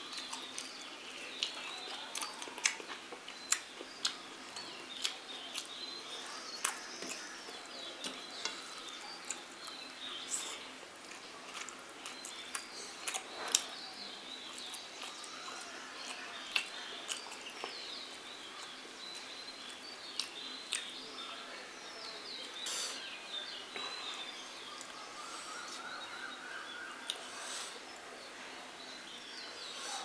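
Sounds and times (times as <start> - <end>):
birds chirping: 0.0 - 30.0
person eating with clicks: 0.1 - 5.8, 11.0 - 13.7, 14.5 - 17.8, 18.6 - 20.9.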